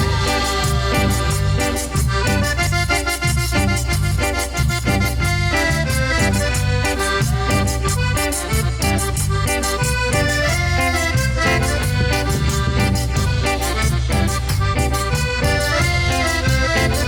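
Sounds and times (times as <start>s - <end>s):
cumbia band playing: 0.0s - 17.0s.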